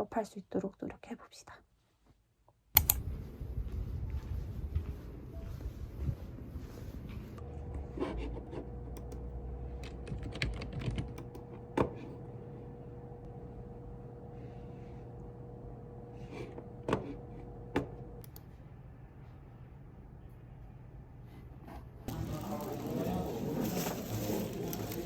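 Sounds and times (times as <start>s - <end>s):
keyboard keystroke clicks: 2.8s - 3.0s.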